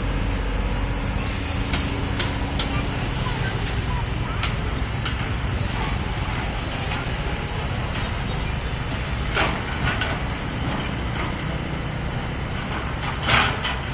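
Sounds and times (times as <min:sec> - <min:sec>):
excavator diesel engine rumbling: 0:00.0 - 0:13.9
high-pitched squeaks or clanks: 0:05.8 - 0:06.4, 0:08.0 - 0:08.6.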